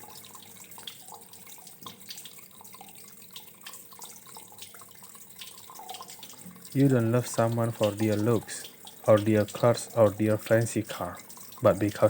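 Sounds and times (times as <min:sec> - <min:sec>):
water drips and plinks: 0:00.0 - 0:12.0
water trickling: 0:00.0 - 0:12.0.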